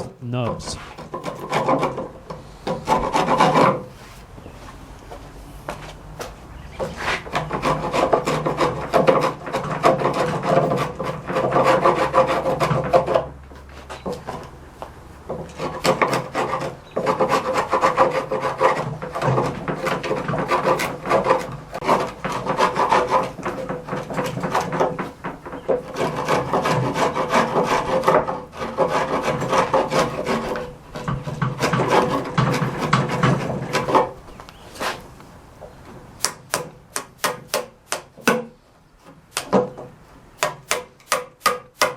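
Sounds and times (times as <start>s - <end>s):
chisel scraping wood: 0.0s - 4.3s, 6.8s - 14.6s, 15.2s - 35.1s
hammer tapping chisel: 40.4s - 41.9s.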